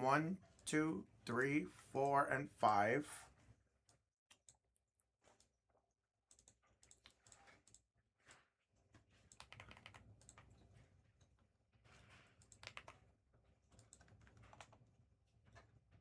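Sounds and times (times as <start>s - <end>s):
faint keyboard typing: 0.0s - 3.2s, 6.3s - 8.4s, 9.1s - 10.8s, 11.9s - 13.1s, 13.7s - 14.9s.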